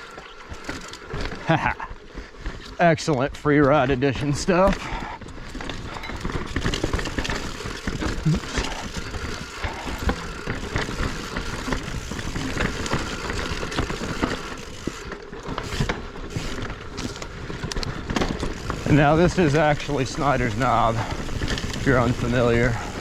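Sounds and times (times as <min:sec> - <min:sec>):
bike knocking and rattling: 0:00.0 - 0:23.0
tyres rushing on dirt trail: 0:00.0 - 0:23.0.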